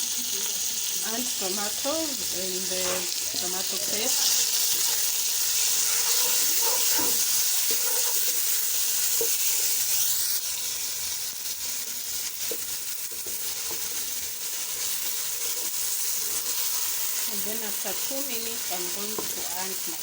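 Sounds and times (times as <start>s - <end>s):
food sizzling in oil: 0.0s - 20.0s
stirring in a pot: 0.6s - 19.7s.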